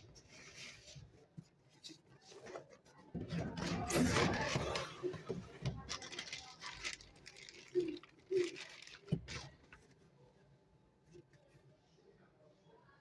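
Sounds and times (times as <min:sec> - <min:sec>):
packaging rustling: 0:05.4 - 0:09.9.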